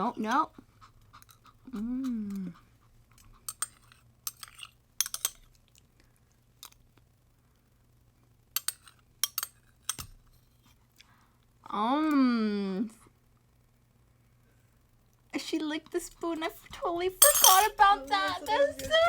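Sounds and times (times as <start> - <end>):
spoon clinking against plate: 3.5 - 5.4, 8.6 - 10.1, 17.2 - 19.0.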